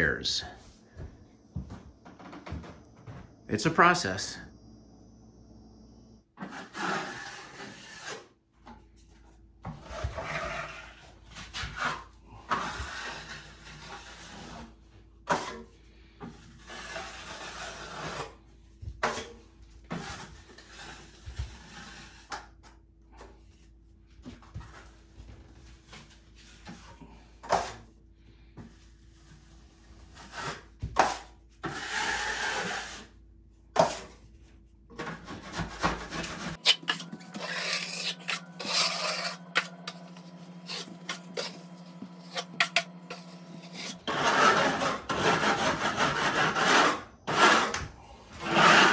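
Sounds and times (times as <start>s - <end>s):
hand tool rasping on drywall: 6.4s - 8.3s, 9.9s - 14.7s, 16.3s - 18.4s, 29.2s - 33.1s, 35.0s - 48.9s.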